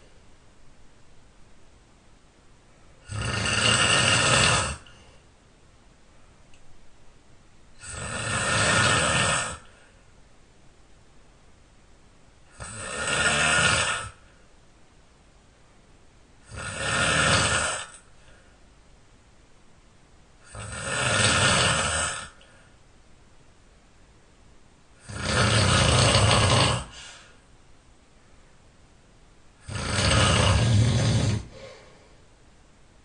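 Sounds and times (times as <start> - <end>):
person snoring loudly: 3.0 - 5.1, 7.8 - 9.8, 12.5 - 14.2, 16.4 - 18.0, 20.4 - 22.5, 25.0 - 27.3, 29.6 - 31.9.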